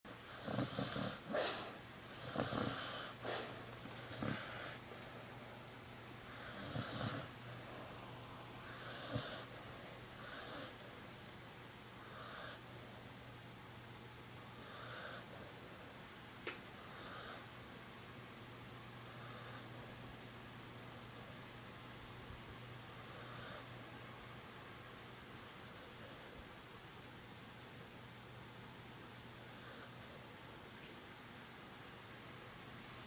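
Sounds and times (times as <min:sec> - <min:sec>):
puppy snoring with whistling wheeze: 0:00.2 - 0:05.2, 0:06.3 - 0:07.7, 0:08.7 - 0:09.6, 0:10.2 - 0:10.8.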